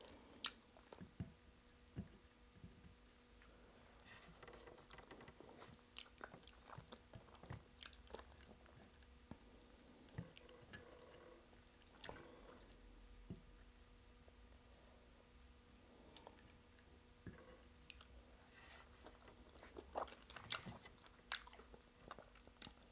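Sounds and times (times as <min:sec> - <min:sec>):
person chewing with wet smacks: 0:00.0 - 0:02.2, 0:05.6 - 0:09.4, 0:10.1 - 0:14.0, 0:15.8 - 0:18.2, 0:18.8 - 0:22.9.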